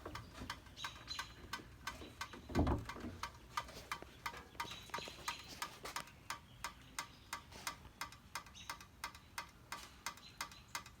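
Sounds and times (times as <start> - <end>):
steady ticking: 0.0 - 11.0.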